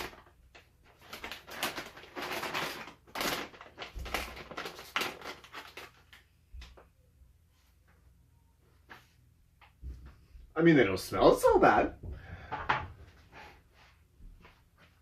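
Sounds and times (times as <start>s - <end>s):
chip bag rustling: 0.0s - 6.2s.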